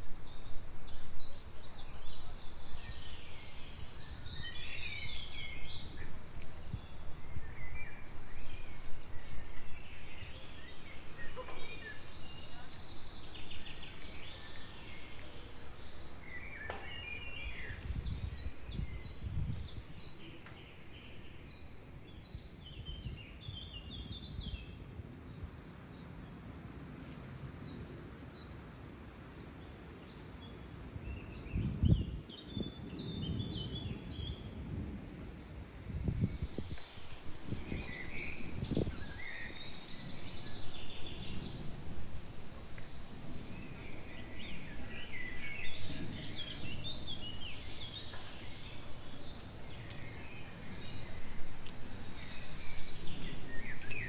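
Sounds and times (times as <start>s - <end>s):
small birds chirping: 0.0s - 27.9s, 31.1s - 54.0s
outdoor background hiss: 0.0s - 54.0s.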